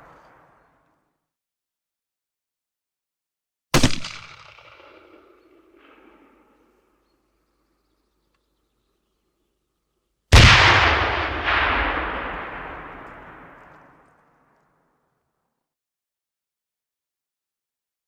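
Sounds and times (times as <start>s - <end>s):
loud explosion blast: 10.3s - 13.9s
smaller explosion crack: 10.3s - 14.0s.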